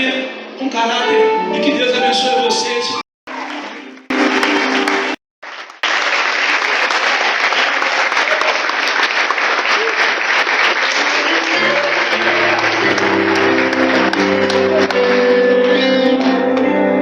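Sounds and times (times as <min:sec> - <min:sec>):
sustained musical notes: 0:01.2 - 0:05.2, 0:11.4 - 0:15.6
congregation clapping: 0:03.3 - 0:16.7.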